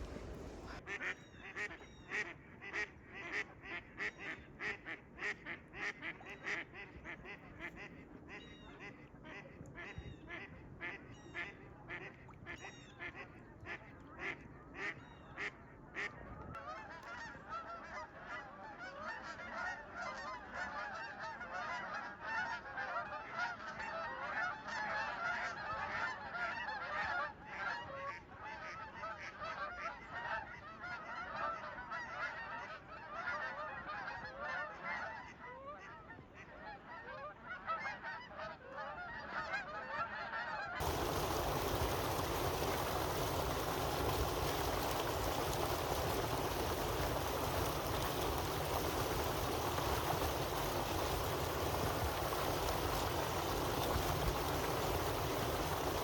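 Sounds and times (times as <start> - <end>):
geese honking: 40.8 - 56.0.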